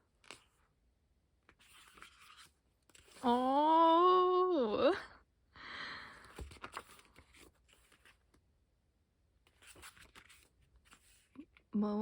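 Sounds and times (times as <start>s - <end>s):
pages rustling: 0.1s - 0.8s, 1.4s - 3.4s, 6.2s - 8.4s, 9.5s - 11.7s.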